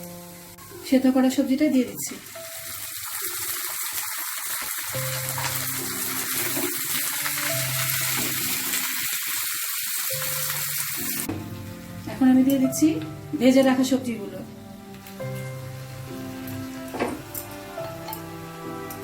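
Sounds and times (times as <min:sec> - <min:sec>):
vegetables sizzling in hot oil: 0:00.0 - 0:14.2, 0:14.9 - 0:19.0
background music: 0:00.0 - 0:19.0.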